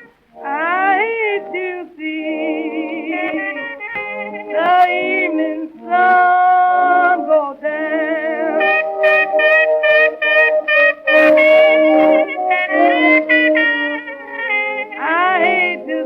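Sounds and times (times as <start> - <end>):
reed organ: 0.0 - 16.0
woman singing blues: 0.4 - 8.9, 14.8 - 16.0.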